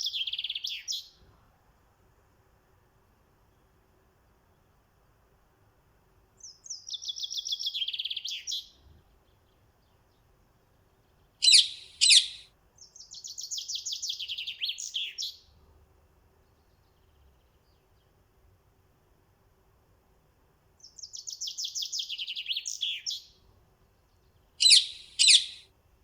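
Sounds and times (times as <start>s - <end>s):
loud sharp bird notes: 11.4s - 12.4s, 24.6s - 25.6s
songbird trilling: 11.4s - 15.4s, 21.0s - 23.2s, 24.6s - 25.6s.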